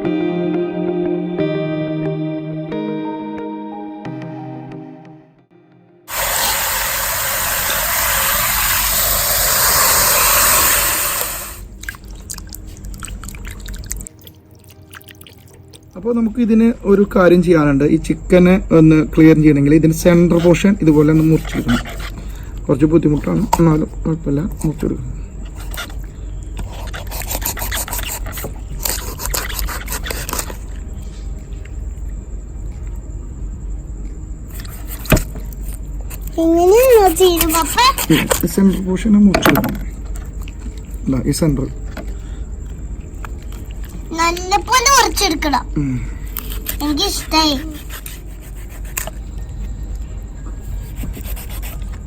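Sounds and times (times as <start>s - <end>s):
water dripping: 11.7s - 16.0s
knife sawing through chicken bone: 26.6s - 30.5s, 47.6s - 49.1s.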